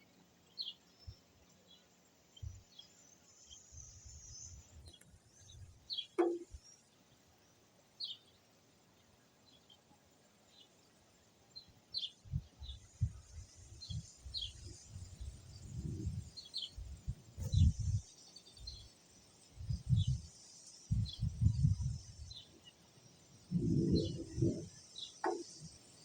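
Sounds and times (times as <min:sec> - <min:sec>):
small birds chirping: 0:00.0 - 0:26.0
low rumbles and thumps: 0:16.9 - 0:18.0, 0:23.5 - 0:24.7.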